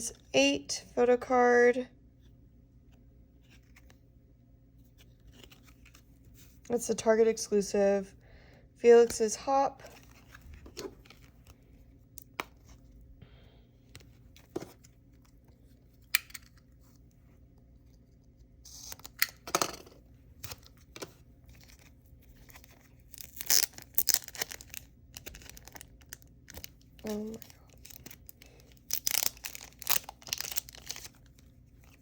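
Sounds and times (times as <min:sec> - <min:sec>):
packaging tearing and crinkling: 0:21.5 - 0:32.0.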